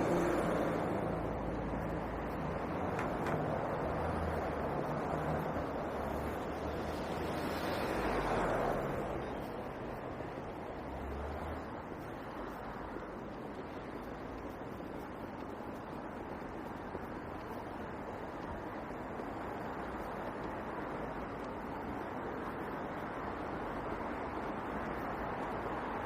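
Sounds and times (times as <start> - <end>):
vehicle passing: 0.0 - 9.2
road traffic noise: 0.0 - 26.0.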